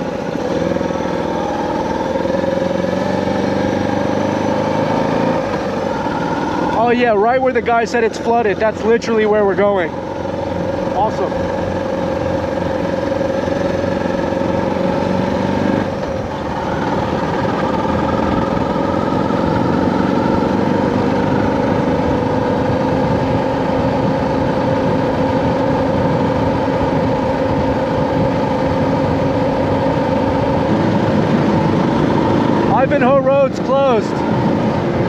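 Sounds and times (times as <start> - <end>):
motorcycle engine running: 0.0 - 35.0
wind noise: 21.7 - 35.0.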